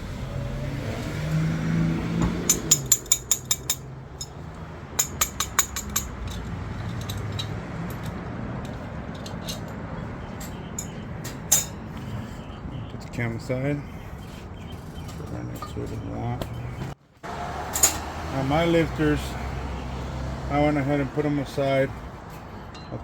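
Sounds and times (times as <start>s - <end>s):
metal-on-metal tapping: 2.4s - 4.4s, 5.0s - 9.8s.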